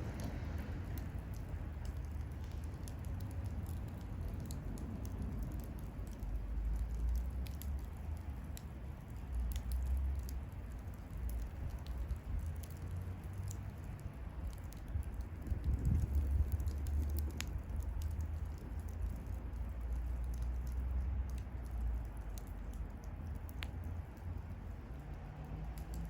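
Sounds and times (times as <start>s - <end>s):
low steady rumble: 0.0s - 26.0s
wood fire crackling: 0.0s - 26.0s.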